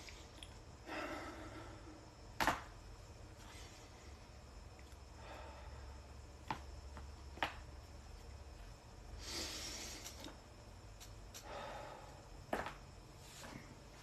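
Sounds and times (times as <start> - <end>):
breathy exhales: 0.8 - 2.0, 5.2 - 6.0, 11.4 - 12.3.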